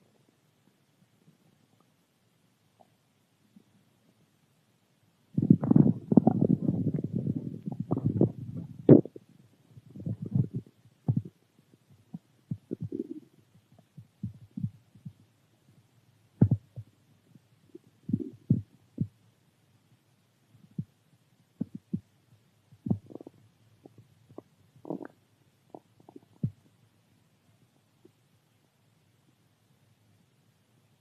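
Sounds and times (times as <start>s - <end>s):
stomach growling and gurgling: 5.4s - 15.2s, 16.4s - 19.2s, 21.6s - 22.1s, 22.8s - 26.8s.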